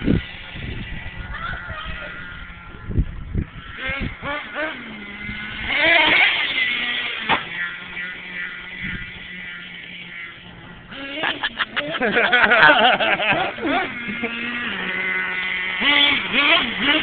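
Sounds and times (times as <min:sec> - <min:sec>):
rc truck engine revving: 0:00.0 - 0:17.0.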